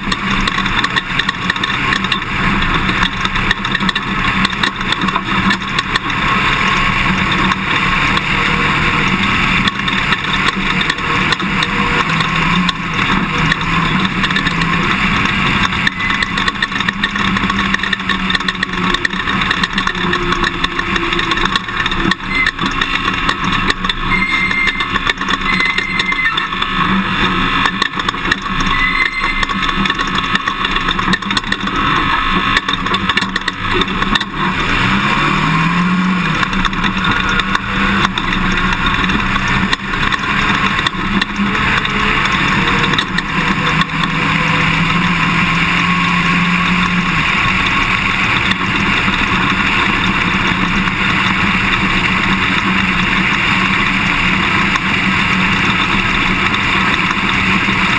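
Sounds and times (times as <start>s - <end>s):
knocks and rattles: 0.0s - 57.9s
pickup engine: 0.0s - 57.9s
road noise: 0.0s - 57.9s.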